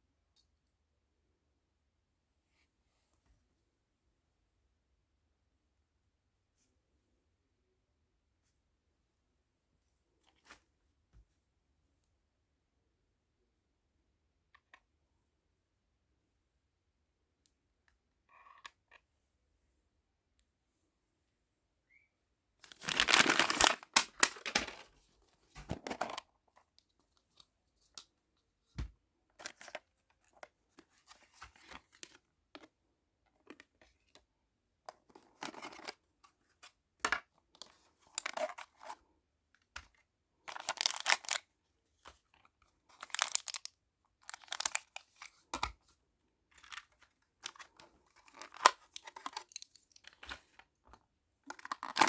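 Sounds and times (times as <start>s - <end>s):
packaging crinkling and tearing: 22.6s - 24.9s, 40.5s - 41.4s, 42.9s - 45.0s, 51.5s - 52.0s.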